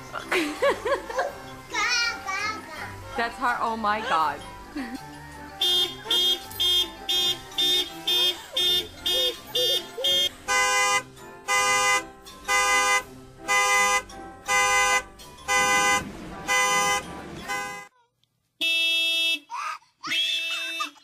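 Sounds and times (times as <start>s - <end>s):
car horn honks: 5.6s - 17.9s, 18.6s - 19.5s.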